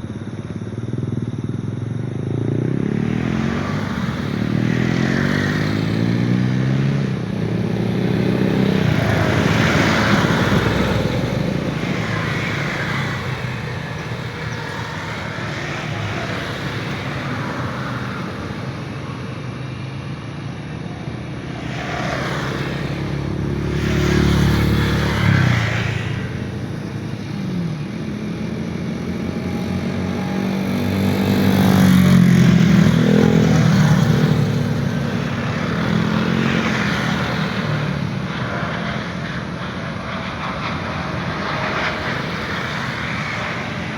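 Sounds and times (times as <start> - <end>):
motorcycles passing: 0.1 - 43.9
cars passing: 2.0 - 43.9.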